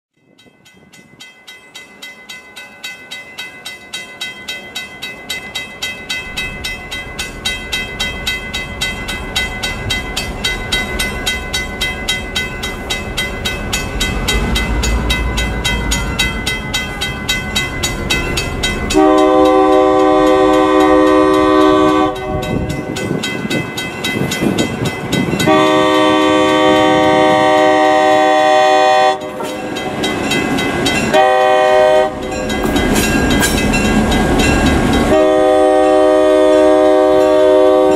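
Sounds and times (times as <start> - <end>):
crossing bell ringing: 0.2 - 37.9
diesel locomotive engine rumbling: 3.8 - 37.9
locomotive horn blasts: 18.9 - 22.8, 25.4 - 29.4, 31.1 - 32.2, 35.1 - 37.9.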